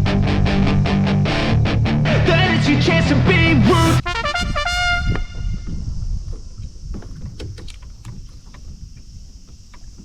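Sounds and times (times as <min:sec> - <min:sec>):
low bass notes: 0:00.0 - 0:05.6.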